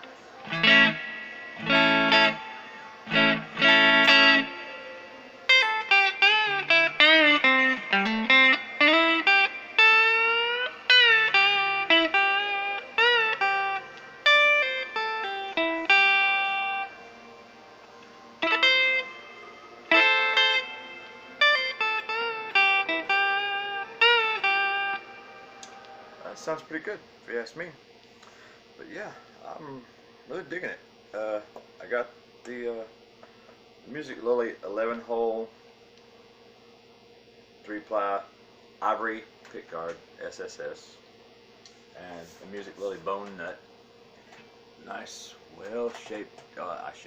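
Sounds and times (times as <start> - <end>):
electric guitar playing: 0.0 - 26.8.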